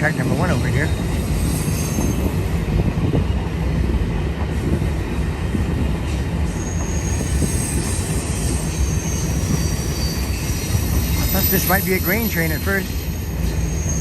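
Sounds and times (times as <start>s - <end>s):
train wheels rumbling on rails: 0.0s - 14.0s
high wheel squeal: 0.8s - 2.4s, 6.5s - 14.0s.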